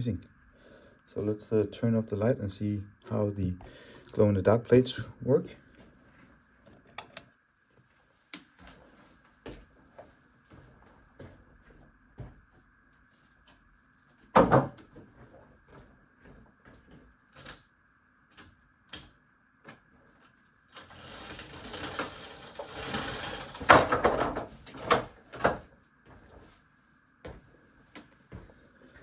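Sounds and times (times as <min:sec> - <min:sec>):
rustling and scraping: 0:20.2 - 0:23.7.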